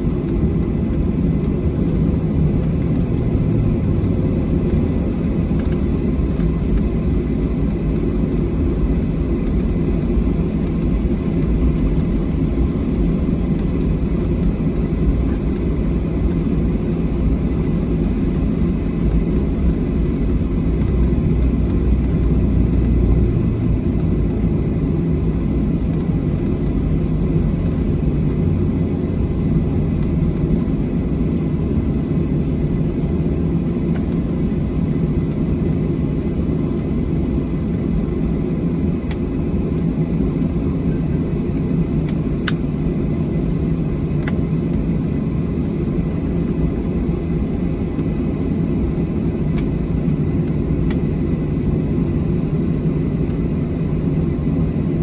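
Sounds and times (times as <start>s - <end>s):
airplane cabin engine rumble: 0.0s - 55.0s
faint engine whine: 0.0s - 55.0s.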